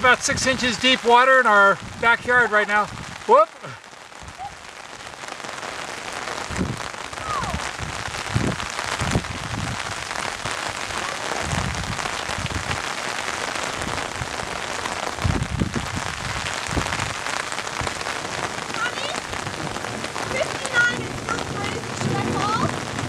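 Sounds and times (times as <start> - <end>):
rain hissing on water: 0.0 - 23.0.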